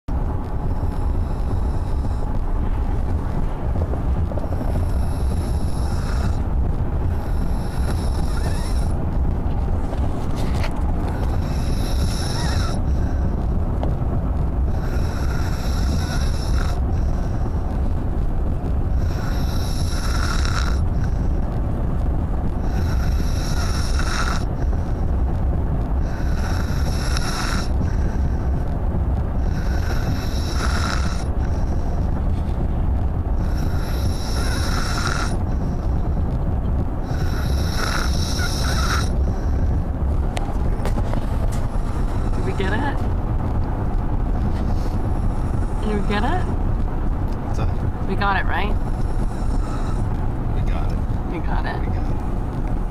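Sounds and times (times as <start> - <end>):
steady low rumble: 0.0 - 52.9
snoring with whistling tone: 4.8 - 6.4, 7.2 - 8.9, 11.3 - 12.8, 14.8 - 17.3, 19.0 - 20.8, 22.7 - 24.5, 26.1 - 28.4, 29.5 - 31.3, 33.4 - 35.4, 37.1 - 39.2.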